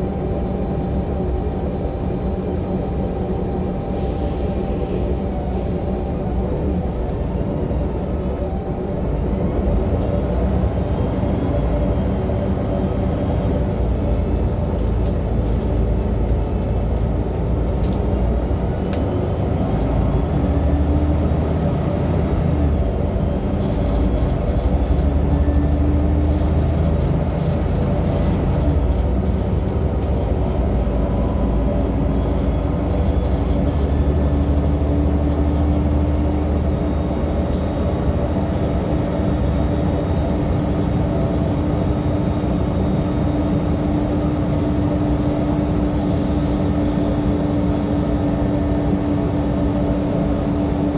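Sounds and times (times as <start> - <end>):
bus engine rumbling: 0.0 - 50.9.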